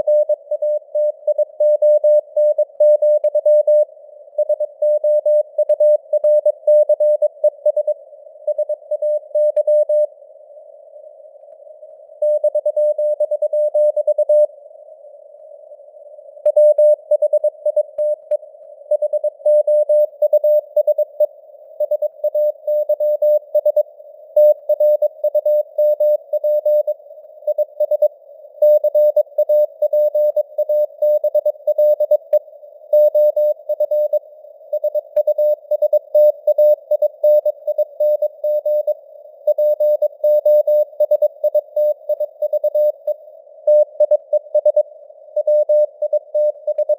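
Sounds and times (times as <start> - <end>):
morse code beeps: 18.9 - 23.8, 24.4 - 32.4, 33.0 - 34.2, 34.8 - 44.8, 45.4 - 46.9.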